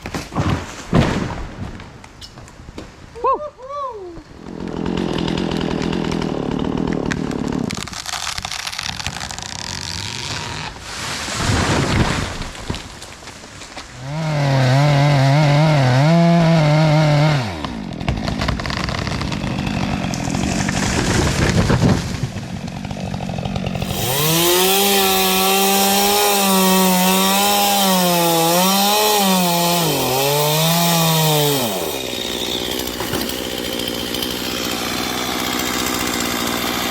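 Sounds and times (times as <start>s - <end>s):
chainsaw cutting at high revs: 4.4s - 10.8s, 13.9s - 36.9s.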